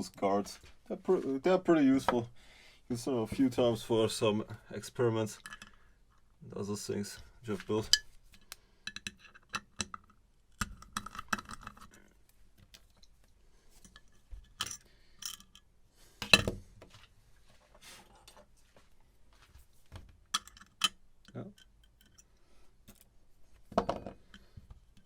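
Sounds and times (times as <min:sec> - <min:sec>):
small metal parts clicking: 0:20.4 - 0:22.3.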